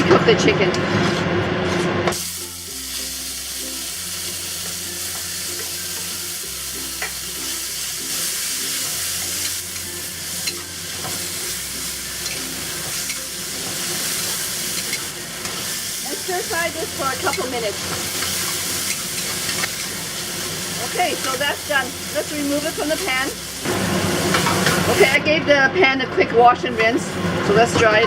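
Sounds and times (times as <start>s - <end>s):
chicken sizzling in oil: 2.1s - 25.2s.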